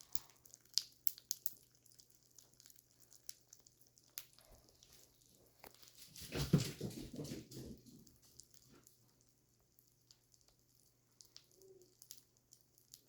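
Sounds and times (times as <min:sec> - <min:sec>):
cereal crackling in milk: 0:00.0 - 0:06.6, 0:07.4 - 0:13.0.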